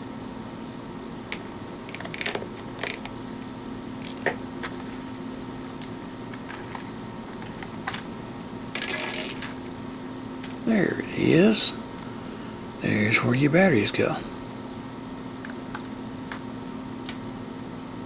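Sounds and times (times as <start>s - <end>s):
plastic parts clicking: 1.3s - 3.2s, 5.8s - 8.1s, 8.7s - 9.6s.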